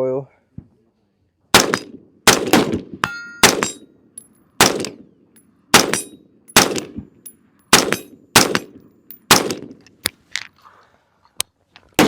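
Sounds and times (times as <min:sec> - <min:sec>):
pistol shots with echo: 0:01.5 - 0:03.9, 0:04.6 - 0:05.1, 0:05.7 - 0:07.0, 0:07.7 - 0:09.8
metallic ring: 0:03.0 - 0:04.5.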